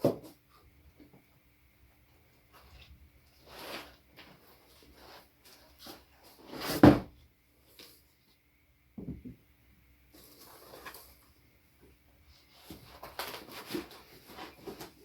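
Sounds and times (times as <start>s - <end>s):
packaging rustling and scraping: 2.5s - 8.1s, 10.1s - 11.4s, 12.3s - 15.0s.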